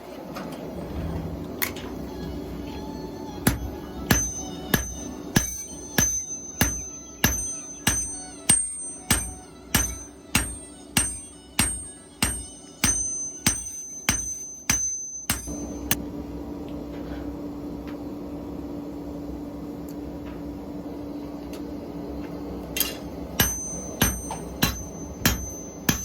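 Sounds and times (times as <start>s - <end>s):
steady low hum: 0.0s - 26.0s
hammer striking anvil: 3.4s - 16.0s, 22.8s - 26.0s.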